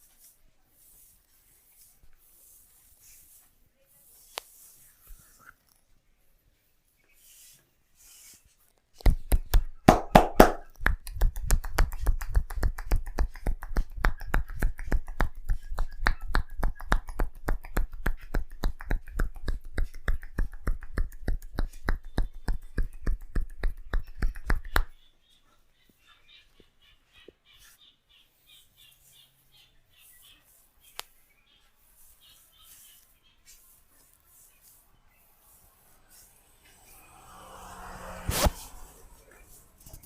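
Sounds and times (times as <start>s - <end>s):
hands tapping a head: 9.0s - 25.0s.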